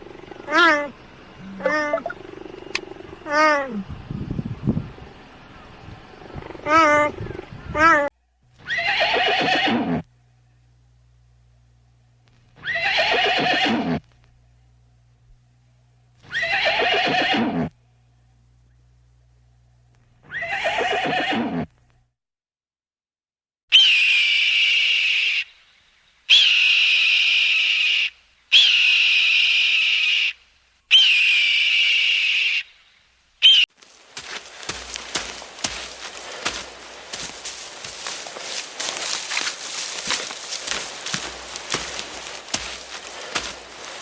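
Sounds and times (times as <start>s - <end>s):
horse whinnying: 8.6s - 10.0s, 12.6s - 14.0s, 16.2s - 17.7s, 20.2s - 21.7s
long high-pitched calls: 23.7s - 25.6s, 26.3s - 32.8s, 33.4s - 33.7s.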